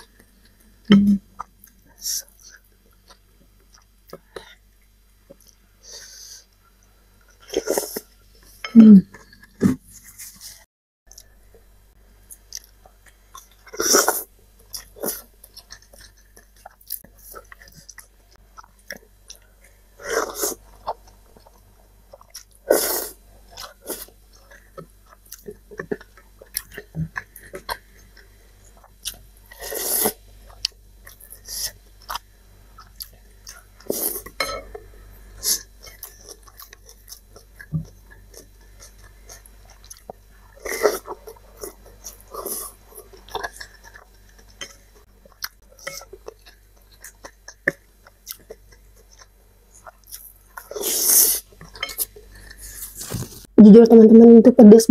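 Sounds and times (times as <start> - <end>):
chewing noodles: 12.3 - 34.4, 35.3 - 53.5.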